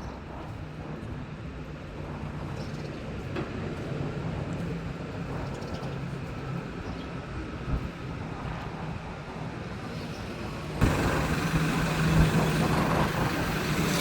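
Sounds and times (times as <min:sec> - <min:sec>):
wind buffeting microphone: 0:07.4 - 0:14.0.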